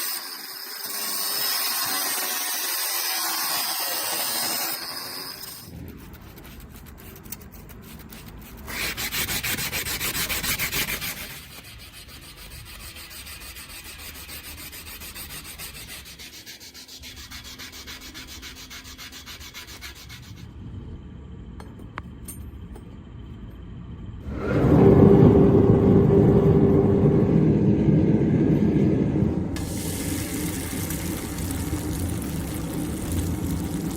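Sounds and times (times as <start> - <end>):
loud low steady noise: 24.0 - 33.9.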